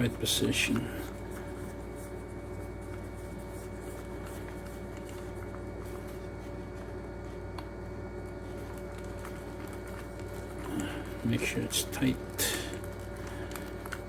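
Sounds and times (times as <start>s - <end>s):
background hum: 0.0s - 14.0s.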